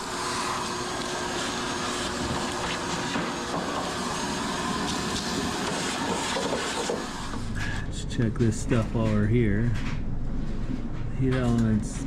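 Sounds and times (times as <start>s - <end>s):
machine running hiss: 0.0s - 8.0s.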